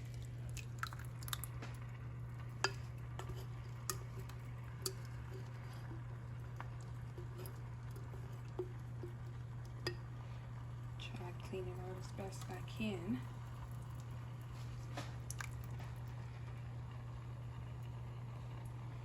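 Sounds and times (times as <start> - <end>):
steady low hum: 0.0 - 19.0
utensil clinking against containers: 2.6 - 5.5.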